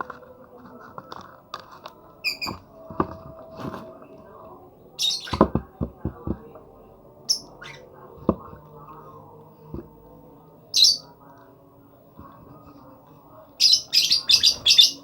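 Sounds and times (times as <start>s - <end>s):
bird giving shrill chirps: 2.2s - 2.6s, 10.8s - 11.0s.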